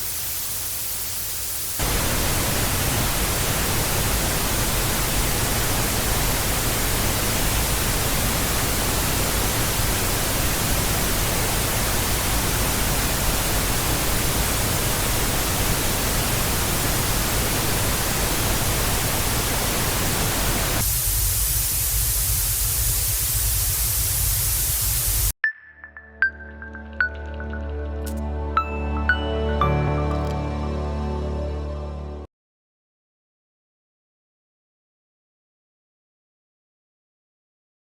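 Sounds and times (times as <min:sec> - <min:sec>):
television static hiss: 0:00.0 - 0:20.9.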